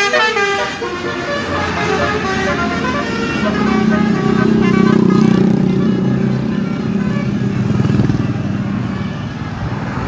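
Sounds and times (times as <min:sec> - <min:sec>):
steady low drone: 0:00.0 - 0:08.9
large engine running pulsing: 0:00.1 - 0:09.7.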